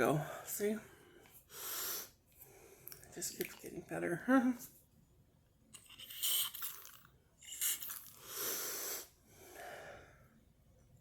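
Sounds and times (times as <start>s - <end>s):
person blowing nose: 6.0s - 6.8s, 7.5s - 9.1s.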